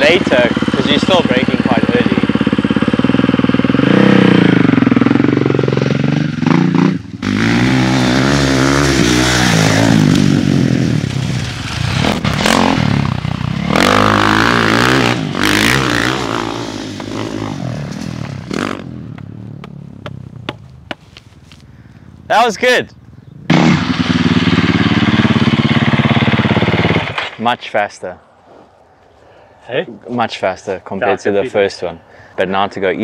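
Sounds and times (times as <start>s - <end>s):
dirt bike engine revving: 0.0s - 19.4s, 23.4s - 27.4s.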